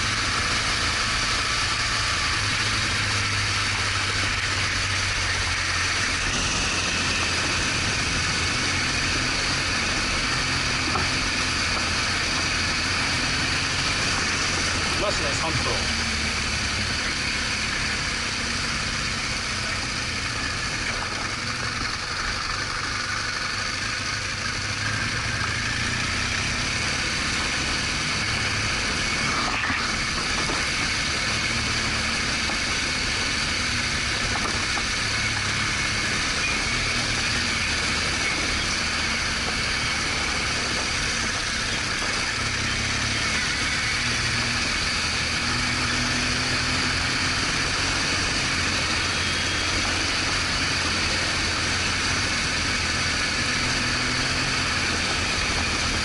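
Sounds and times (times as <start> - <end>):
motorcycle engine running: 0.0 - 56.0
rush of noise: 0.0 - 56.0.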